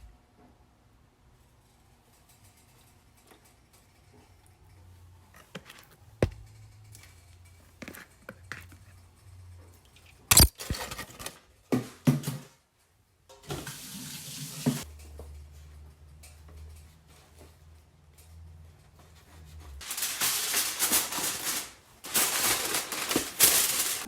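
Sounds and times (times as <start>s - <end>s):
kitchen knocks and clatters: 10.3s - 12.6s.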